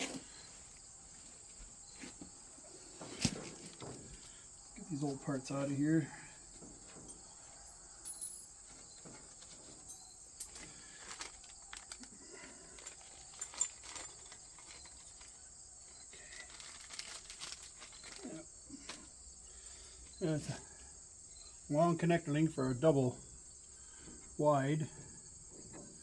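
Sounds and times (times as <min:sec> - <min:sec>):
crickets chirping: 0:00.0 - 0:26.0
chain parts clicking and knocking: 0:07.0 - 0:15.4.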